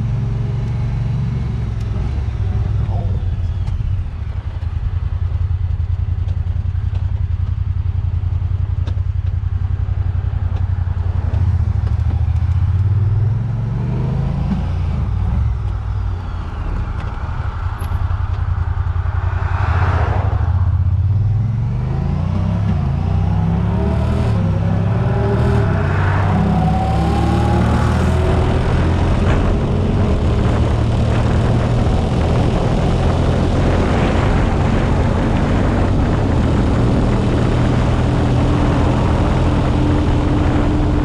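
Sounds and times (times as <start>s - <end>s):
utility vehicle engine running: 0.0s - 41.0s
rushing whoosh: 16.4s - 41.0s.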